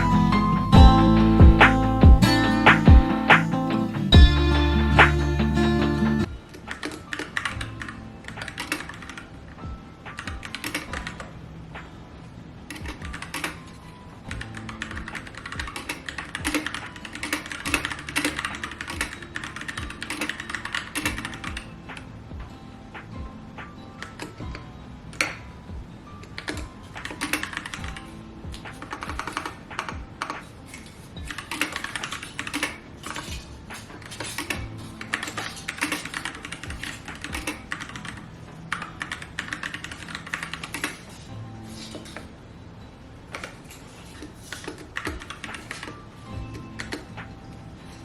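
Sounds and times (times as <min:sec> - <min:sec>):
background music: 0:00.0 - 0:48.0
fast typing on a keyboard: 0:06.7 - 0:09.2, 0:14.3 - 0:21.6, 0:26.5 - 0:28.0, 0:31.2 - 0:33.3, 0:34.1 - 0:41.1, 0:44.5 - 0:46.0.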